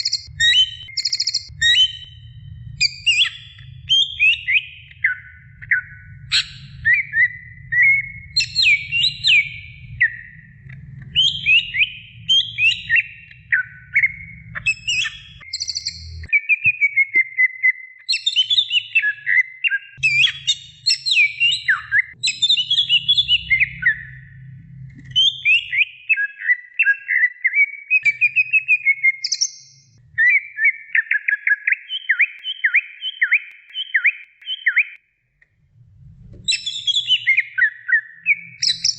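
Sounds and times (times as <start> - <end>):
bird singing whistled notes: 0.0 - 24.4, 25.2 - 35.0, 36.5 - 38.9
faint low rumble: 0.2 - 16.3, 20.0 - 25.8, 35.4 - 37.4.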